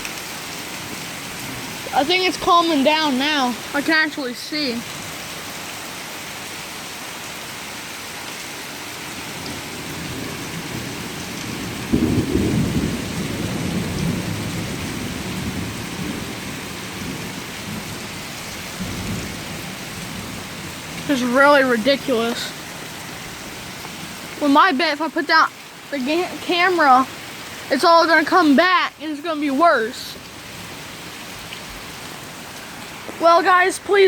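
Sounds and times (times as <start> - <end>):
heavy rain: 0.0 - 34.0
thunder rumbling: 9.4 - 23.3.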